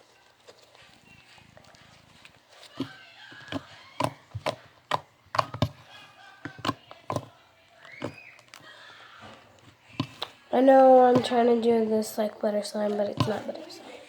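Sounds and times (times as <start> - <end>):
small objects knocking on hard surface: 2.7 - 8.7, 9.4 - 10.4, 11.0 - 11.6.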